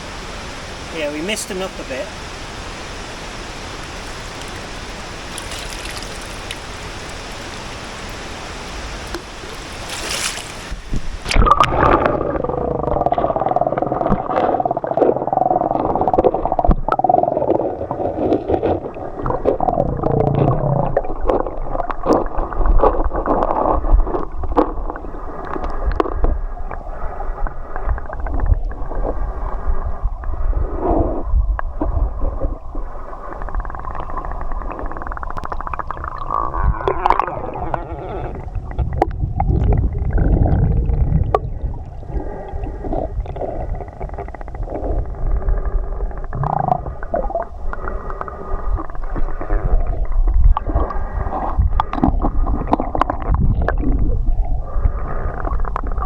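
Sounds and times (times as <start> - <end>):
muffled underwater river gurgling: 0.0 - 56.0
small underwater knocks: 5.3 - 6.7
low rumble: 19.2 - 56.0.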